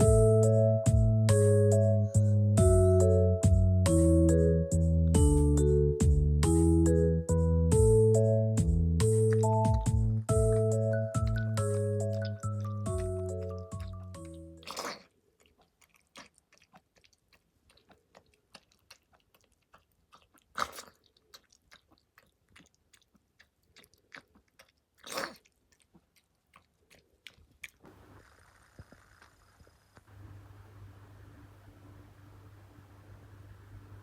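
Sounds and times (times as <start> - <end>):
dog chewing: 9.2 - 28.0
faint steady hiss: 27.8 - 34.0.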